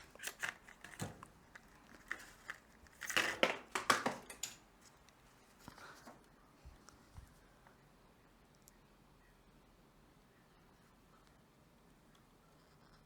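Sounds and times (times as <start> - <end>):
plastic crinkling and clicking: 0.0 - 6.1.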